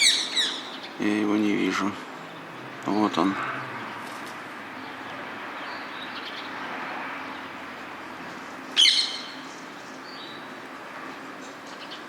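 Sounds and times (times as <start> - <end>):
parakeet shrieking: 0.0 - 0.9, 8.8 - 9.4
steady background hiss: 0.0 - 12.0.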